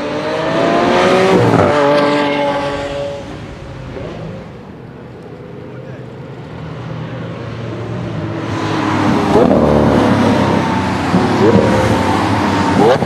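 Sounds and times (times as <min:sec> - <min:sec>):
car engine at high revs: 0:00.0 - 0:13.0
gear changes: 0:08.1 - 0:13.0.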